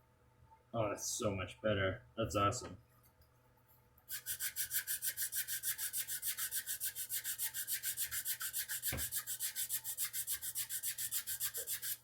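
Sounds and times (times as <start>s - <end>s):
sandpaper rubbing on wood: 4.1s - 12.0s.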